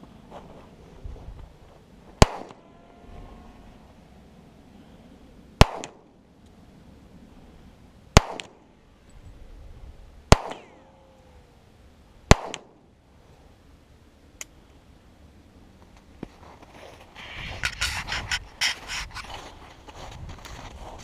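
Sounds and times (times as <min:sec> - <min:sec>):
pistol shots with echo: 0:02.2 - 0:02.6, 0:05.6 - 0:06.0, 0:08.2 - 0:08.6, 0:10.3 - 0:10.8, 0:12.3 - 0:12.7.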